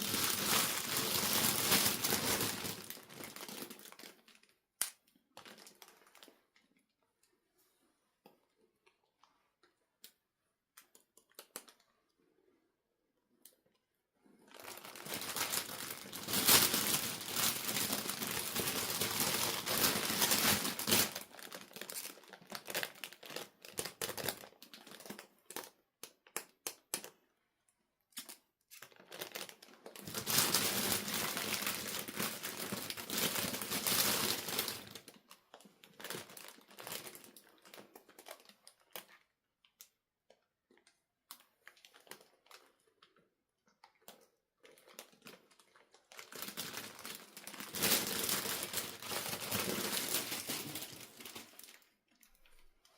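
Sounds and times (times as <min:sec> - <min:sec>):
packaging crinkling: 0:00.0 - 0:04.5, 0:05.3 - 0:06.4, 0:14.4 - 0:25.7, 0:28.2 - 0:39.2, 0:44.0 - 0:52.7.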